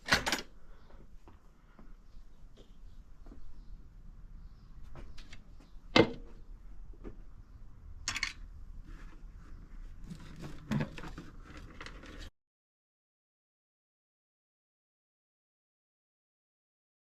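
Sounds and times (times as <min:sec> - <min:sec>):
parts clattering: 0:00.0 - 0:00.6, 0:08.0 - 0:08.5
scrape: 0:08.8 - 0:12.3.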